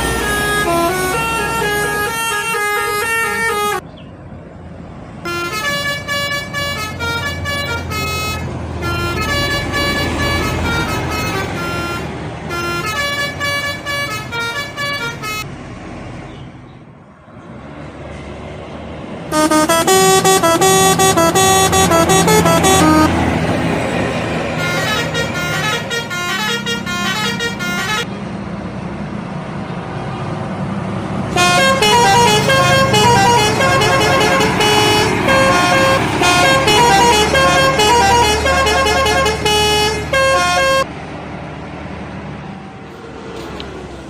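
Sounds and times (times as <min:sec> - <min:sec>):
melodic bus horn: 0:00.0 - 0:03.9, 0:05.2 - 0:15.5, 0:19.3 - 0:28.2, 0:31.3 - 0:40.9
bus engine running: 0:00.0 - 0:44.0.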